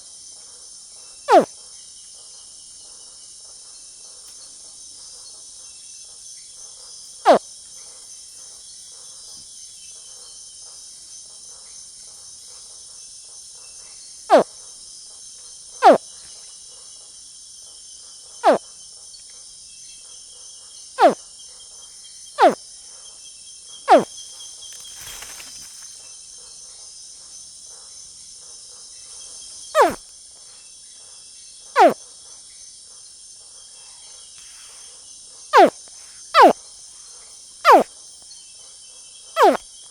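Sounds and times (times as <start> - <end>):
crickets chorus: 0.0 - 39.9
crocodile chirping calls: 1.3 - 1.5, 23.9 - 24.1, 29.8 - 30.0, 31.8 - 32.0, 35.6 - 35.8, 36.4 - 36.6, 37.7 - 37.9, 39.4 - 39.6
brief rustle: 24.8 - 26.0.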